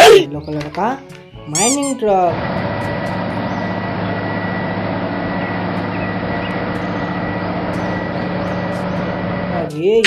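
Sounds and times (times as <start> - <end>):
truck engine running: 2.3 - 10.0.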